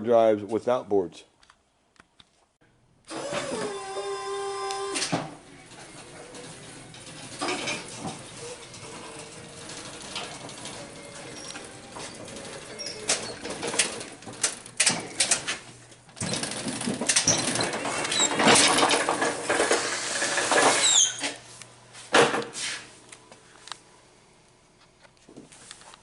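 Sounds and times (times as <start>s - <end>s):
handling knocks and clatter: 7.1s - 19.8s
short high squeak: 20.8s - 21.4s.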